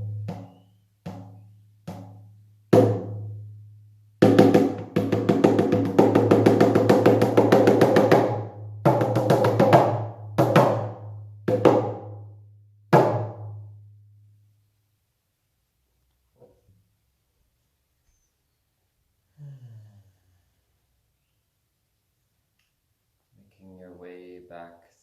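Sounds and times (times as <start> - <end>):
hand drum beats: 4.2 - 12.2.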